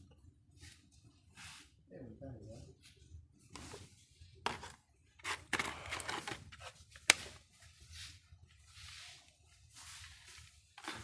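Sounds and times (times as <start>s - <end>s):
plastic plates rustling and scraping: 2.8s - 11.0s.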